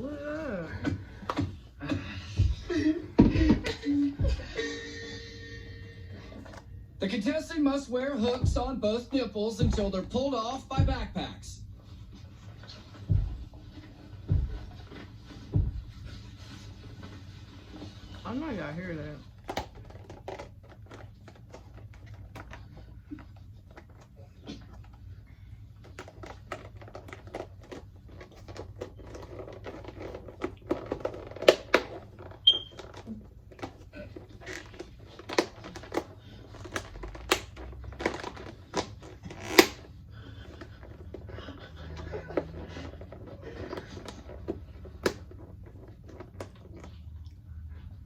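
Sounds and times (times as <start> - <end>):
sharp clicks and crinkling: 19.4 - 25.0, 25.8 - 39.9.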